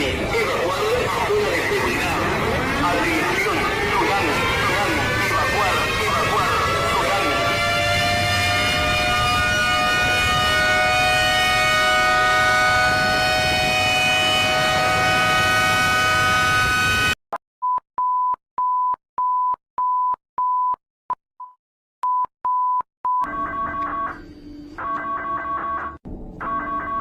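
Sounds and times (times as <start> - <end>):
warning siren chord: 0.1 - 17.2.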